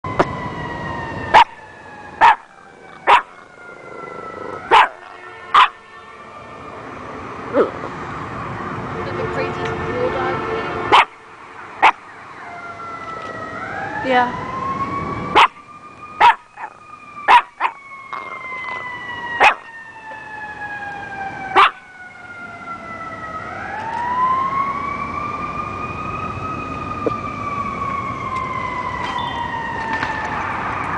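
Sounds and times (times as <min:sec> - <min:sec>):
siren wailing: 0:00.0 - 0:30.9
dog barking: 0:01.4 - 0:01.6, 0:02.2 - 0:03.4, 0:04.7 - 0:05.8, 0:10.9 - 0:11.2, 0:11.8 - 0:12.0, 0:15.3 - 0:15.6, 0:16.2 - 0:17.8, 0:19.4 - 0:19.6, 0:21.6 - 0:21.8.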